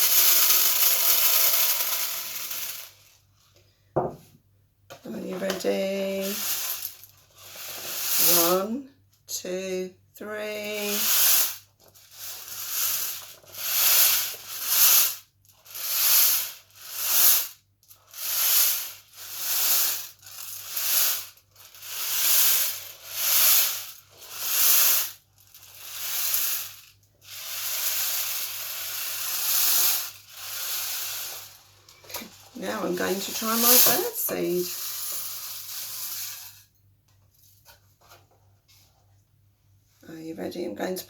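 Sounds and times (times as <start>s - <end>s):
rice rattling on foil tray: 0.0s - 3.1s, 6.2s - 8.6s, 10.8s - 36.6s.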